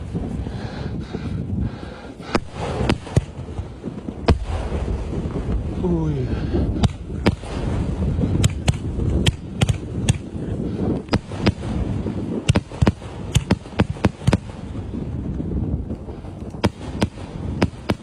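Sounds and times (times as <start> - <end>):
low rumble: 0.0 - 12.4
fireworks cracking: 2.1 - 18.0.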